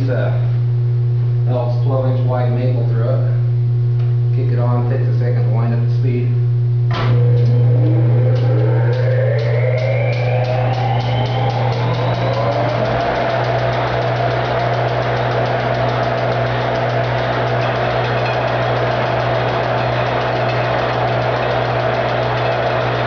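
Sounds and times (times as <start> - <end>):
constant hum: 0.0 - 23.0
planer motor whining: 6.9 - 23.0.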